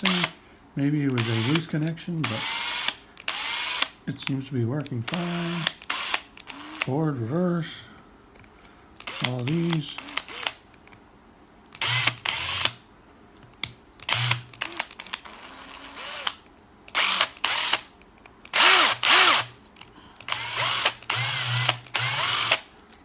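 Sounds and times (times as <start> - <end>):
impact driver motor bursts: 0.0 - 0.4, 1.2 - 1.7, 2.3 - 4.0, 5.1 - 6.9, 9.0 - 10.6, 11.8 - 12.8, 14.0 - 17.9, 18.5 - 19.6, 20.2 - 22.7.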